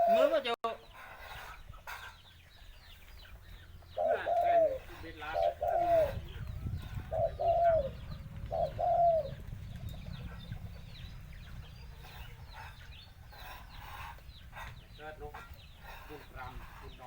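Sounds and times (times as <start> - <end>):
dove cooing: 0.0 - 0.4, 3.9 - 17.0
small birds chirping: 0.0 - 17.0
low rumble: 5.5 - 16.0.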